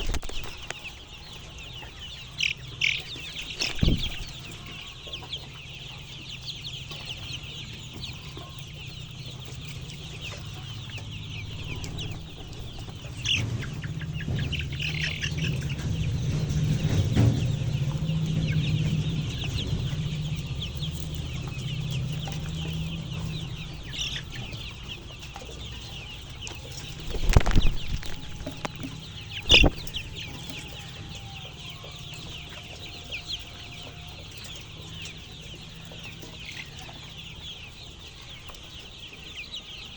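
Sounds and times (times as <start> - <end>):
wings flapping: 0.0 - 0.9, 3.2 - 4.6, 26.7 - 30.2
chickens clucking and calling: 0.0 - 39.9.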